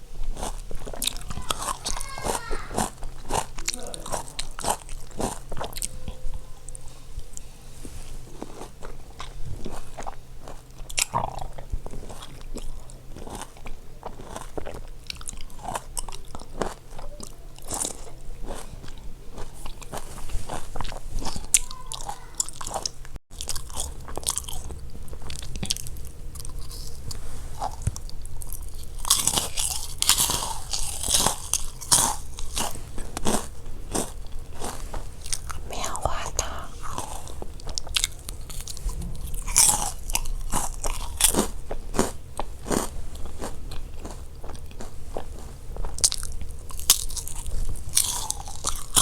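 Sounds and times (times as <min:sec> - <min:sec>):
person sipping and swallowing water: 0:34.8 - 0:40.1.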